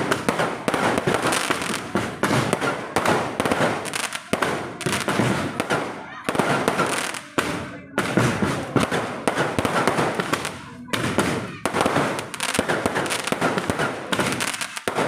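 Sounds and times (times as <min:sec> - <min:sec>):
fireworks crackling and banging: 0:00.0 - 0:15.0.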